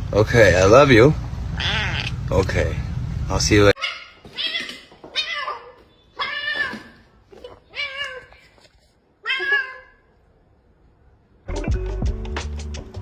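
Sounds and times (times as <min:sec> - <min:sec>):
cat meowing: 0:01.6 - 0:02.2, 0:03.8 - 0:08.5, 0:09.2 - 0:10.2
music: 0:11.5 - 0:13.0.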